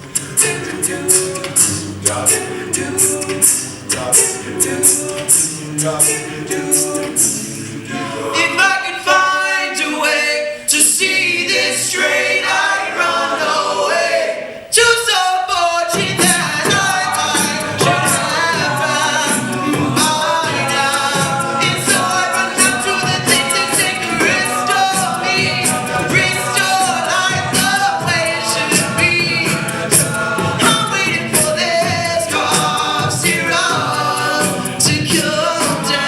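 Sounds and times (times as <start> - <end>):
percussive beat: 0.0 - 7.6, 15.9 - 36.0
a cappella group singing: 0.0 - 36.0.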